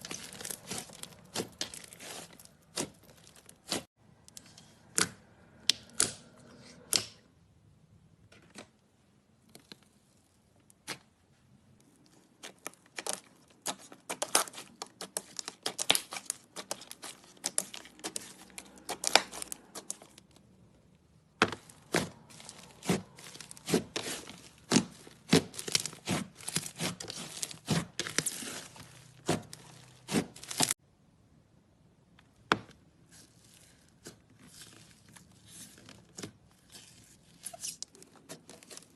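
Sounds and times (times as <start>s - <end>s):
slime crackling and popping: 12.4s - 20.3s, 21.6s - 30.8s.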